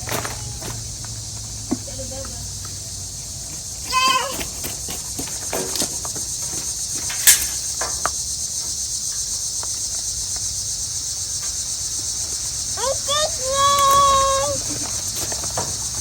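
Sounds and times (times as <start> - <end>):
high-pitched insect chorus: 0.0 - 16.0
short knocks and scrapes: 4.0 - 8.2
sharp click: 7.1 - 7.6.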